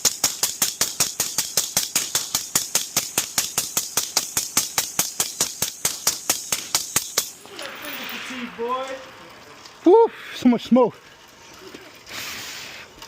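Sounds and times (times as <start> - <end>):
rapid gunfire: 0.0 - 8.8.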